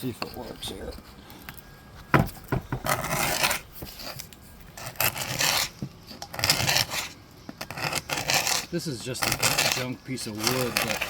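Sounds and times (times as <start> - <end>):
scraper knocking: 2.0 - 4.3
scraper rasping on wood: 2.4 - 11.0.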